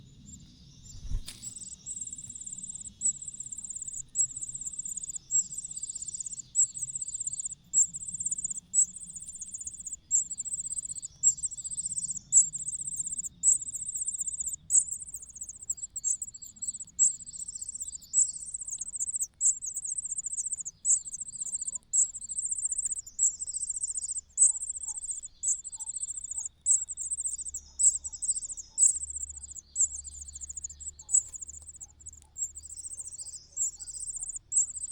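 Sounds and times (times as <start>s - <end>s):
insect pulsed trills: 0.0s - 34.9s.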